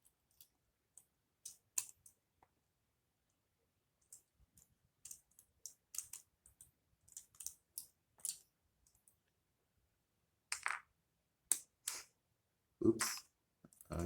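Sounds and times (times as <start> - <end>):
plastic pieces clicking and rattling: 0.3 - 2.2, 4.0 - 9.2.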